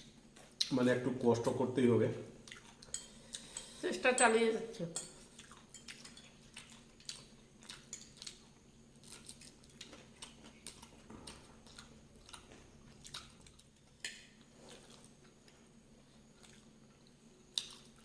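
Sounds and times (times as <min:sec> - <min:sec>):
faint steady hum: 0:00.0 - 0:18.0
chewing with wet mouth sounds: 0:02.4 - 0:03.8, 0:05.2 - 0:18.0.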